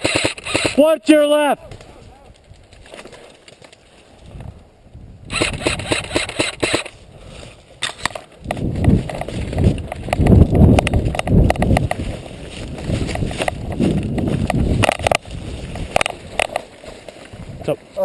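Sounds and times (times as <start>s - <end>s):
airsoft rifle firing burst: 0.0s - 0.9s, 5.3s - 7.0s
loud low rustling: 5.3s - 18.0s.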